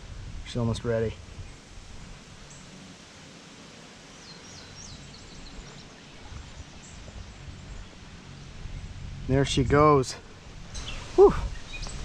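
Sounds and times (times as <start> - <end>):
small bird chirping: 4.1 - 9.1, 10.6 - 12.0
stream water rushing: 10.2 - 12.0.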